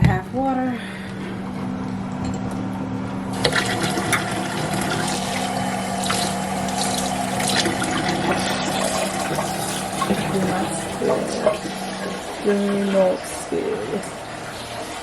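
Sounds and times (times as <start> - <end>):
water running and splashing: 3.3 - 15.0.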